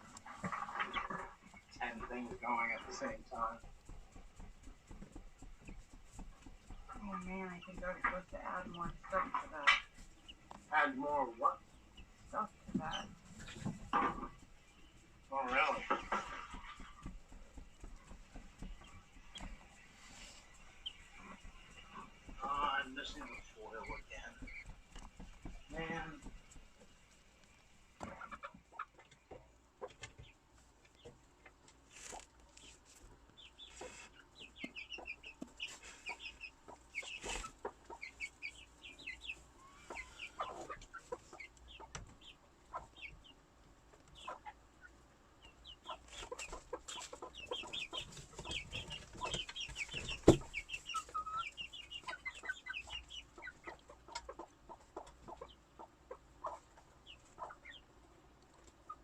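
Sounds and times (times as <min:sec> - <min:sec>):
chicks peeping: 0:00.0 - 0:59.0
soft clucking: 0:00.0 - 0:59.0
scattered taps: 0:00.1 - 0:10.8, 0:11.5 - 0:19.9, 0:20.5 - 0:28.7.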